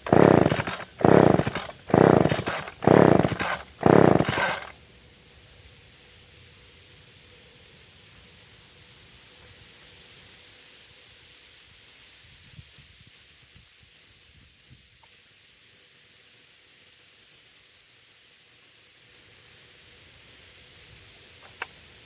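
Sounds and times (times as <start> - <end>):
background hiss: 4.8 - 22.0.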